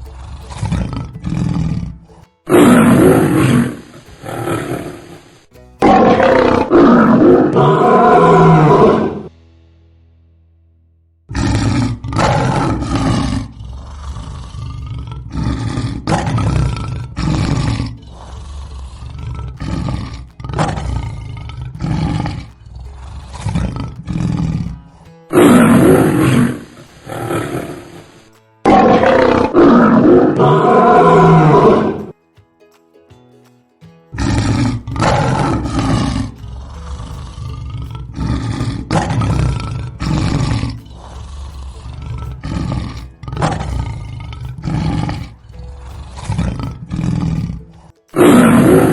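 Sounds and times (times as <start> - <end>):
lions roaring: 0.0 - 9.3, 11.3 - 32.1, 34.2 - 48.9.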